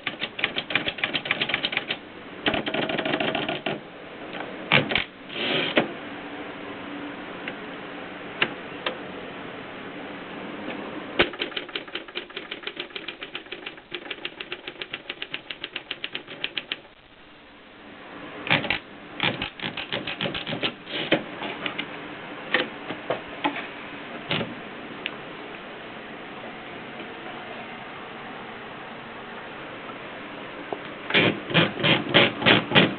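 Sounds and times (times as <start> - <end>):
manual typewriter keystrokes: 0.0 - 3.8, 11.2 - 16.9, 18.5 - 20.8.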